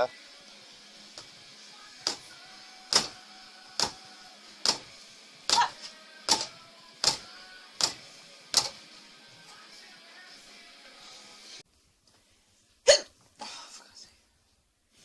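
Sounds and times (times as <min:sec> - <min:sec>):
punches hitting a target: 0:02.9 - 0:03.2, 0:04.6 - 0:04.9, 0:05.5 - 0:08.0.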